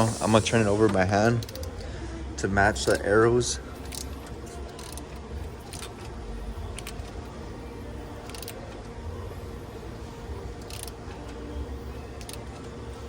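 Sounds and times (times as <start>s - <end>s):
ratchet wrench clicks: 0.0s - 1.8s, 3.8s - 6.1s, 6.7s - 7.2s, 8.2s - 8.7s, 10.6s - 11.3s, 12.2s - 12.5s
low hum: 0.0s - 13.0s.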